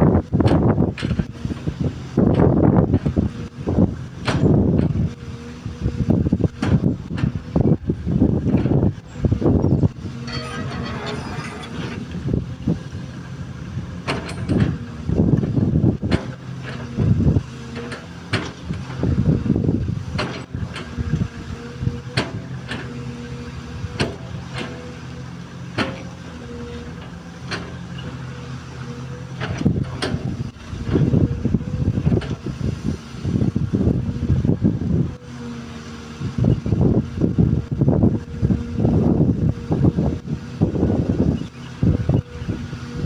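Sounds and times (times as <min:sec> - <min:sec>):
excavator diesel engine rumbling: 0:00.0 - 0:43.0
metal knocks and clanks: 0:09.9 - 0:12.5.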